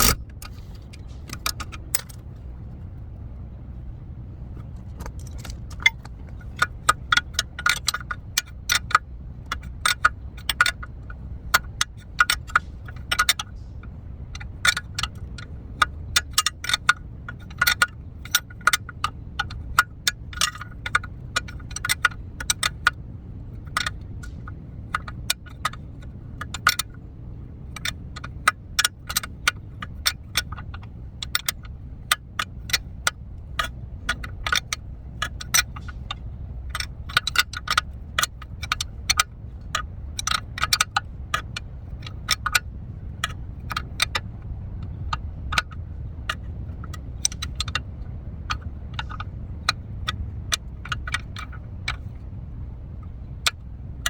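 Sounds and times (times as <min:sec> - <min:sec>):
metal tools clinking: 0:00.0 - 0:02.4
steady low hum: 0:00.0 - 0:54.0.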